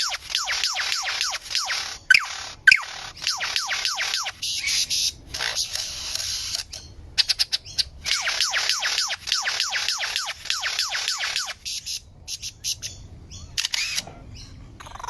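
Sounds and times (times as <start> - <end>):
bird rapid clicks: 0.0 - 4.8, 8.1 - 12.5, 13.6 - 14.0
bird whistling descending notes: 0.0 - 4.8, 8.1 - 11.6.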